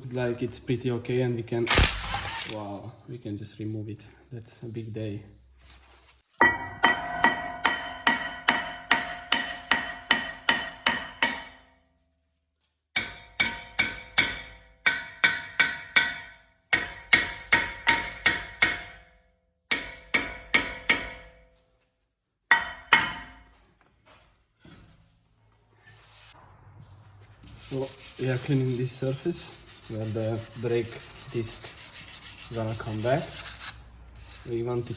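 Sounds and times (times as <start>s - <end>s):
hammer striking steel brake disc: 6.4s - 11.6s.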